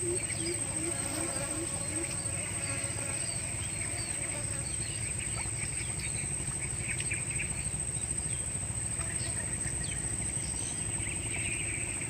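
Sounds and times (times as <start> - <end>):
bird chirps: 0.0 - 0.8
high-pitched insect drone: 0.0 - 12.0
low steady rumble: 4.7 - 12.0.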